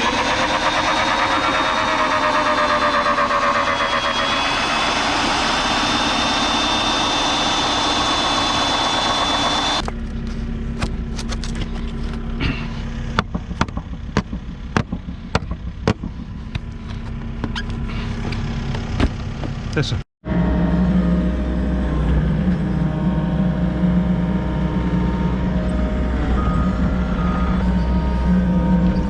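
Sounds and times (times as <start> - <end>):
excavator engine whining: 0.0 - 29.0
sharp knocks and clatters: 13.2 - 19.6.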